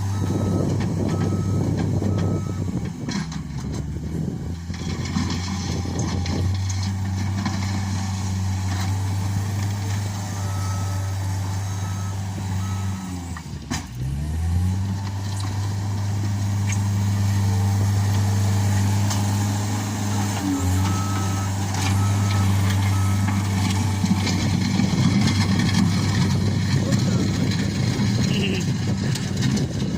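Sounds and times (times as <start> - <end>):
loader diesel engine running: 0.0 - 29.9
backup alarm beeping: 0.1 - 2.6, 20.1 - 23.9.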